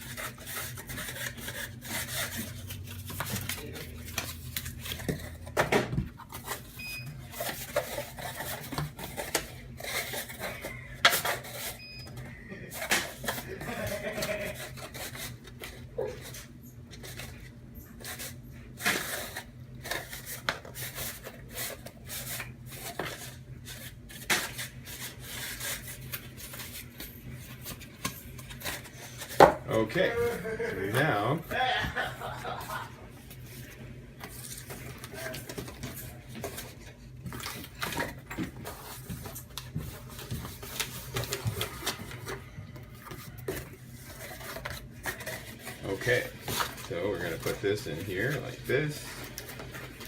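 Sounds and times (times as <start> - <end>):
cardboard folding and creasing: 0.0 - 11.9, 33.2 - 50.0.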